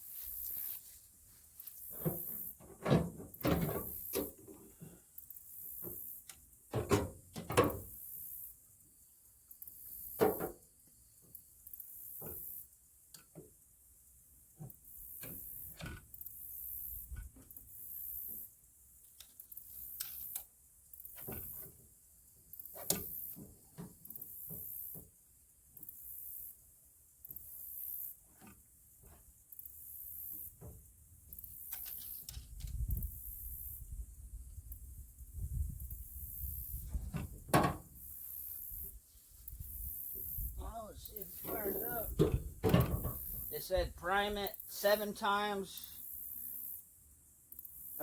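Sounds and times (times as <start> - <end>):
high hissing buzz: 37.8 - 46.9.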